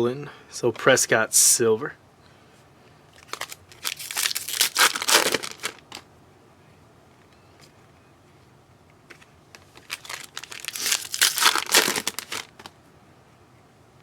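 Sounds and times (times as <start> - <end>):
foil wrapper tearing and crinkling: 3.2 - 6.0, 9.6 - 12.7.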